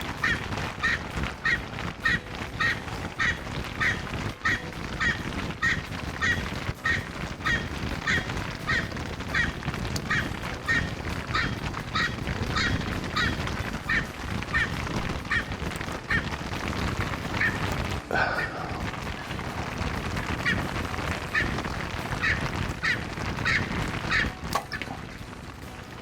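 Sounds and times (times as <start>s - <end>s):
bird harsh repeated calls: 0.0s - 25.3s.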